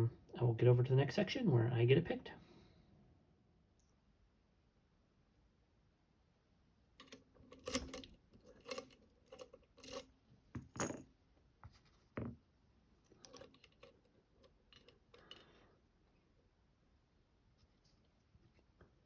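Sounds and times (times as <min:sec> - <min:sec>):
lock-picking tools clicking: 0:07.0 - 0:10.1, 0:13.1 - 0:15.5.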